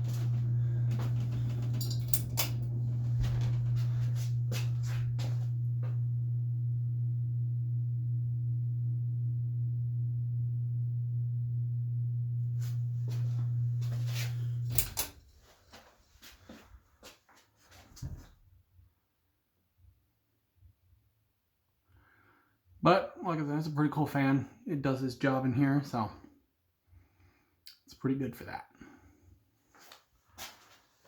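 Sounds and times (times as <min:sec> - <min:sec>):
ceiling fan motor humming: 0:00.0 - 0:15.2.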